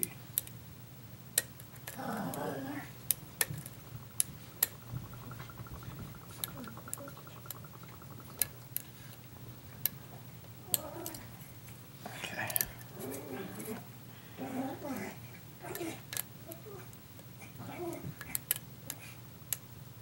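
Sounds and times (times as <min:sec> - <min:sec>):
low murmur: 0:02.0 - 0:09.1.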